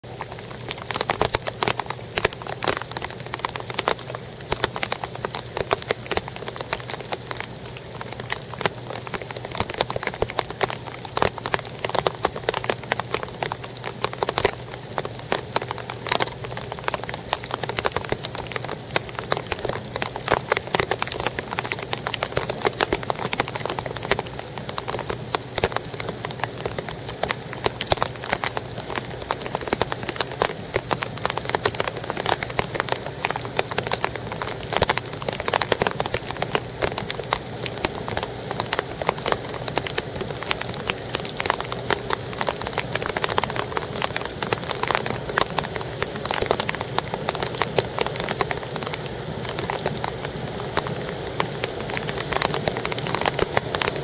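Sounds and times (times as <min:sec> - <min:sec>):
low steady hum: 0:00.0 - 0:54.0
raindrops tapping: 0:00.0 - 0:54.0.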